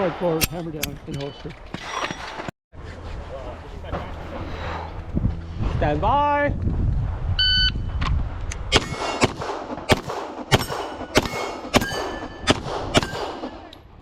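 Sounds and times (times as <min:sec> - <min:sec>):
pistol shots: 0:08.7 - 0:13.6.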